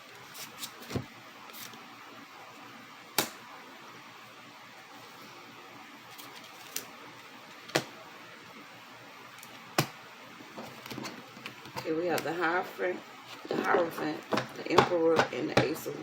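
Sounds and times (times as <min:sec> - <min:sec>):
faint room noise: 0:00.0 - 0:16.0
cards slapping on a table: 0:03.2 - 0:03.4, 0:07.7 - 0:08.0.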